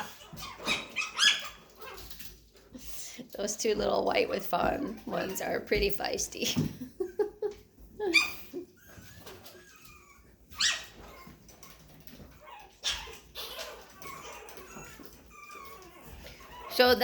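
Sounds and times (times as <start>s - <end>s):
puppy sharp yelps: 0.0s - 2.1s, 8.1s - 11.3s, 12.5s - 16.7s
puppy squeaks and whimpers: 0.0s - 2.4s, 8.0s - 17.0s
puppies yipping and whining: 0.0s - 5.9s, 7.0s - 17.0s.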